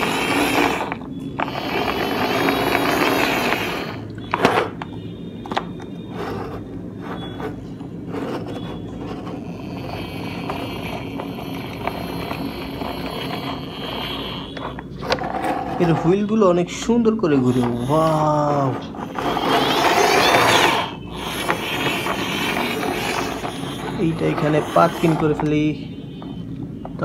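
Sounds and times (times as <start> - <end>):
plastic toy wheels rumbling: 0.0 - 4.8, 5.5 - 25.8.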